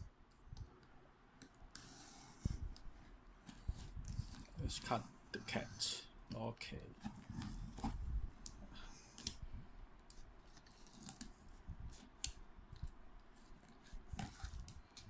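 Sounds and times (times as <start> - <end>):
blade cutting tape on cardboard: 13.4 - 14.8.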